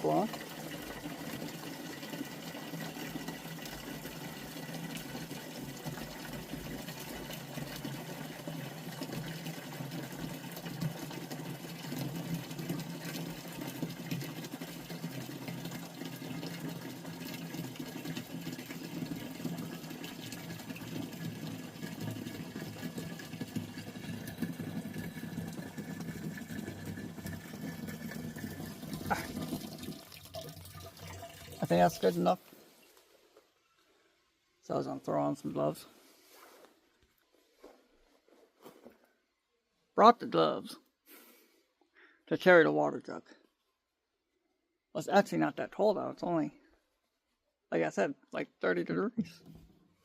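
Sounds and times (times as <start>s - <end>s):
tap water filling a plastic jug: 0.0s - 33.9s.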